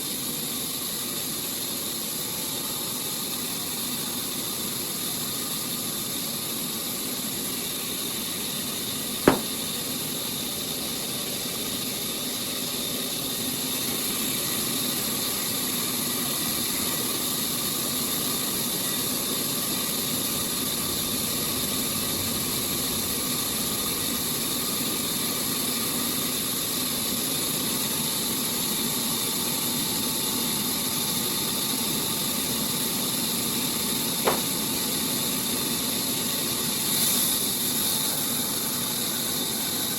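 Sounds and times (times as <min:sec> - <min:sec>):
sawmill machinery drone: 0:00.0 - 0:39.9
sharp knock: 0:09.3 - 0:09.6, 0:34.3 - 0:34.6.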